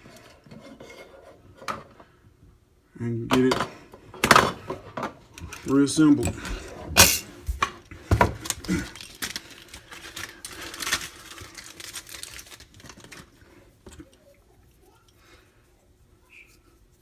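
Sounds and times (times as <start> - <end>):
plastic packaging crinkling and tearing: 8.4 - 13.6.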